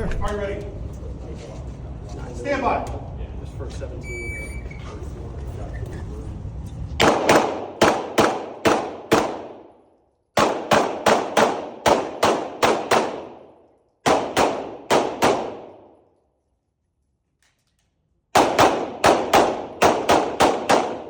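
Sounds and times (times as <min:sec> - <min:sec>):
pistol shots with reverberation: 0:07.0 - 0:09.8, 0:10.4 - 0:16.0, 0:18.3 - 0:21.0.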